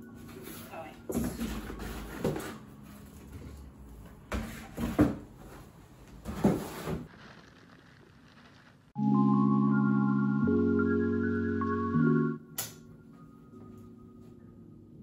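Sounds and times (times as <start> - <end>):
cardboard box knocks and scrapes: 6.2 - 7.1.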